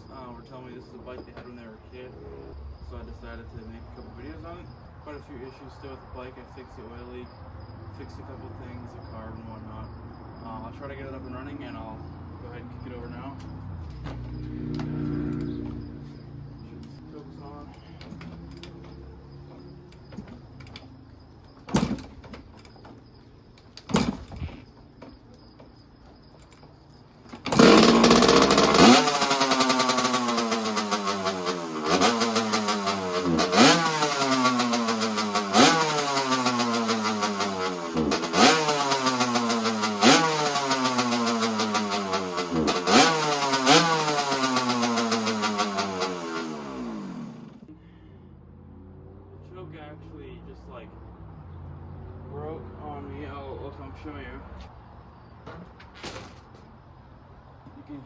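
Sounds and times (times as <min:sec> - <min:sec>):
two-stroke engine revving: 0:12.5 - 0:17.4, 0:27.4 - 0:47.7
kick starter knocks: 0:21.6 - 0:23.0, 0:23.7 - 0:25.8, 0:27.2 - 0:29.0.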